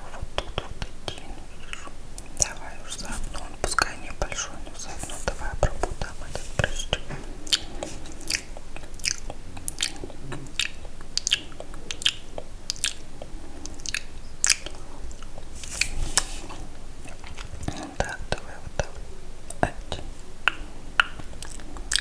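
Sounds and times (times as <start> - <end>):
wet mouth smacks and clicks: 6.7 - 16.3, 17.0 - 22.0.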